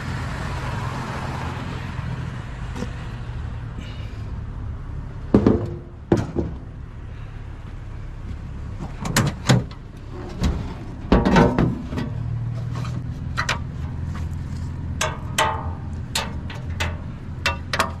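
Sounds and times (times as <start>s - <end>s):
rattling metal clatter: 8.8s - 18.0s.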